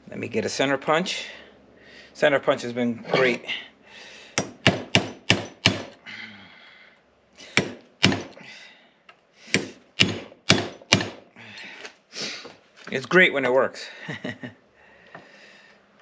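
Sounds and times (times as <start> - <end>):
hammer striking metal punch: 4.4 - 6.0, 7.5 - 8.4, 9.5 - 11.2.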